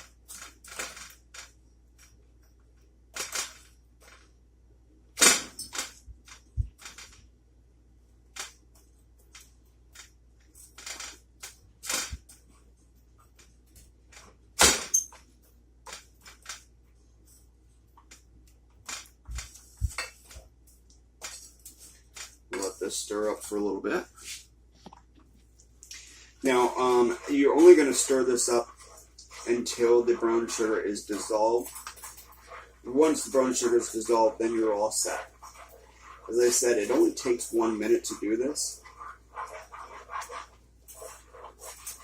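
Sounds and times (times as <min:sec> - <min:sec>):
spoon scraping a saucepan: 0:26.0 - 0:42.0.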